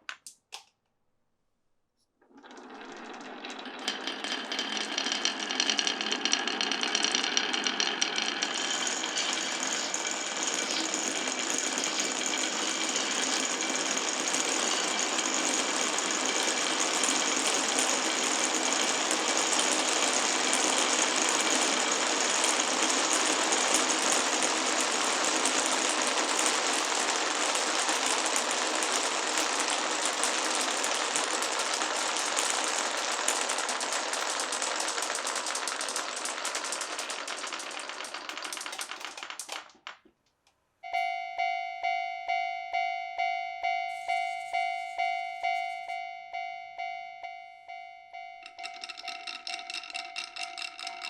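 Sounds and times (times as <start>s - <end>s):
marbles rattling down wooden run: 2.4s - 40.0s, 48.4s - 51.0s.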